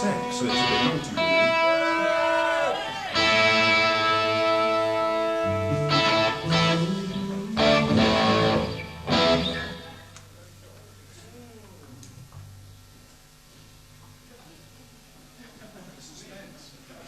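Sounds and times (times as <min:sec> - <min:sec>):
electric guitar chords: 0:00.0 - 0:10.4
low bass notes: 0:03.2 - 0:10.2.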